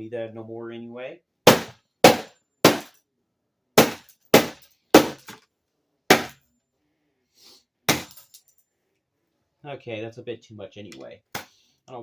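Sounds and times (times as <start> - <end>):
hard smashing blows: 1.5 - 2.9, 3.8 - 5.3, 6.1 - 6.4, 7.9 - 8.2.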